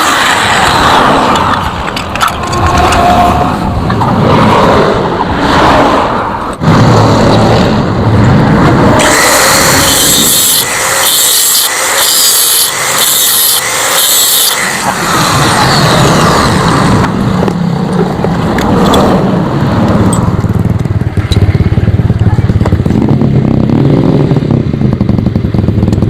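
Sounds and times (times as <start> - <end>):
power tool grinding metal: 9.0 - 17.0.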